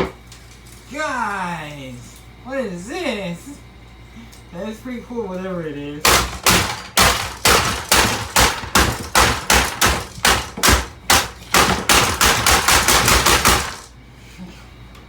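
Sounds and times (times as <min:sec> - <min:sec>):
hard blows smashing a stereo: 0:06.0 - 0:13.9.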